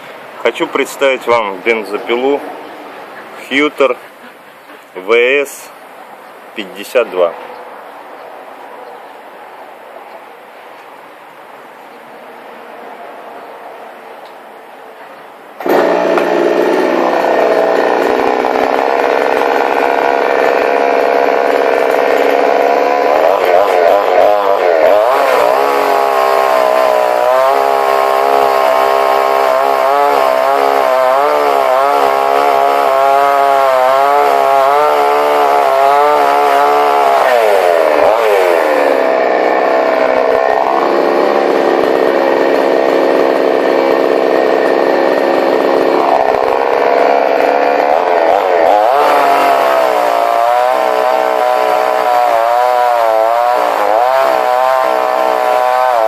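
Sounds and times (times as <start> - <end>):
chainsaw engine revving: 15.6 - 56.0.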